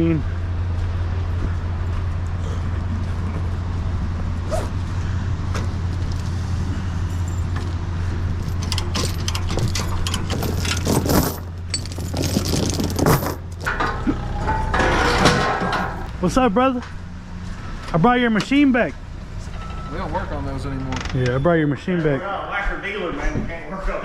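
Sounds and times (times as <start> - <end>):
loose metal clinking and clanking: 8.4 - 16.1.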